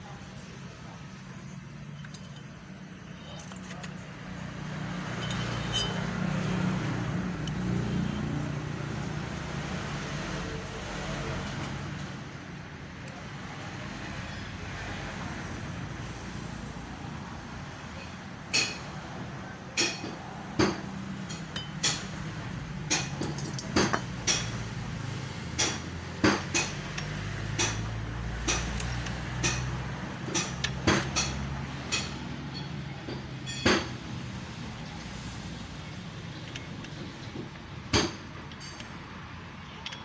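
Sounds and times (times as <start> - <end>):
sharp metallic knocks: 5.1 - 6.6, 19.8 - 22.2, 25.5 - 34.2, 36.4 - 40.0.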